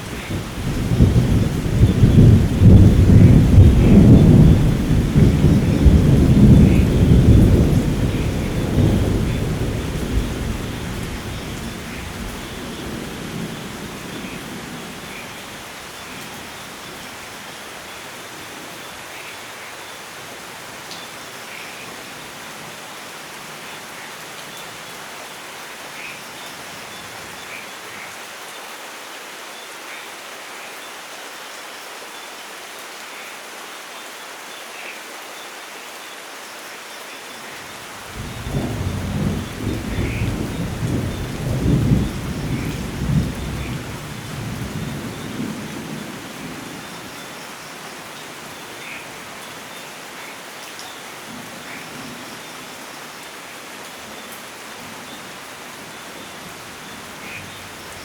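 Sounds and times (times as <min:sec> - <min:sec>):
rain hissing: 0:00.0 - 0:28.0, 0:37.0 - 0:58.0
thunder rumbling: 0:00.1 - 0:15.2, 0:38.1 - 0:47.2.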